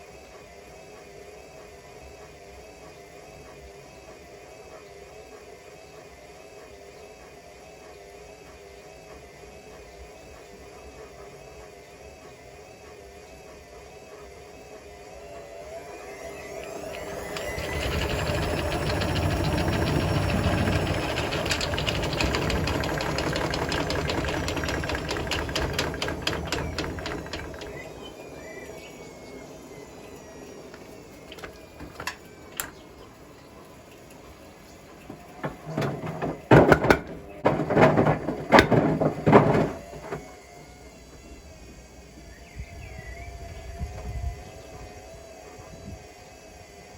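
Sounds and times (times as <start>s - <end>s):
washing machine drum spinning down: 16.4s - 33.1s, 35.0s - 40.6s
clunks of drum turning: 16.8s - 28.0s, 30.8s - 32.8s, 35.0s - 40.3s.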